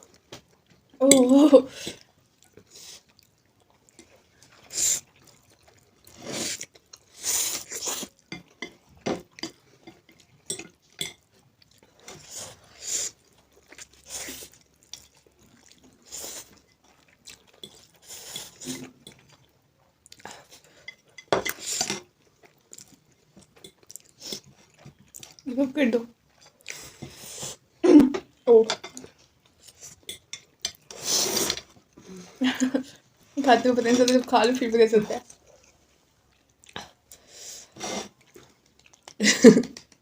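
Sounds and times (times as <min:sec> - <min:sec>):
chewing: 0:02.0 - 0:25.5, 0:26.2 - 0:27.2, 0:35.2 - 0:37.3, 0:38.0 - 0:39.2.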